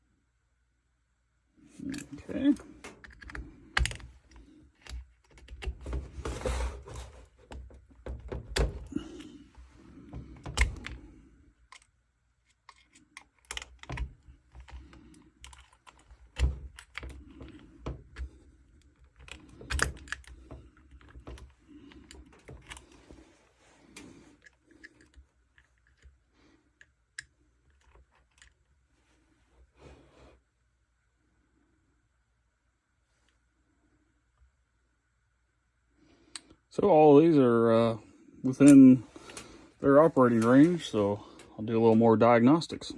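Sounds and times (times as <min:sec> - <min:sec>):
hands handling electrical parts: 0:01.7 - 0:28.7, 0:38.5 - 0:42.0.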